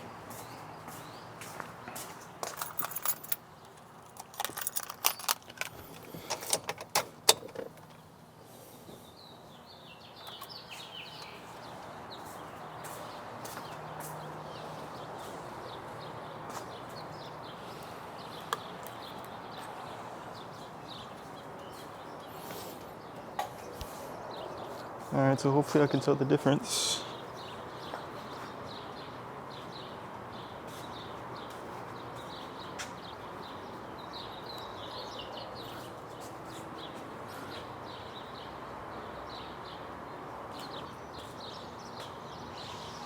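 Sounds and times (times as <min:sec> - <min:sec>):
steady background noise: 0:00.0 - 0:43.0
keys jangling: 0:02.4 - 0:08.0.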